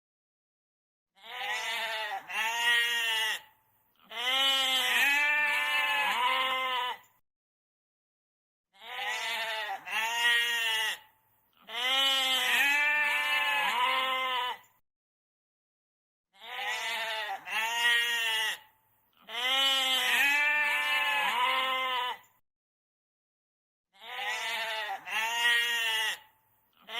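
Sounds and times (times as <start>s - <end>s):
goat bleating: 1.2s - 7.1s, 8.8s - 14.7s, 16.4s - 22.3s, 24.0s - 26.9s.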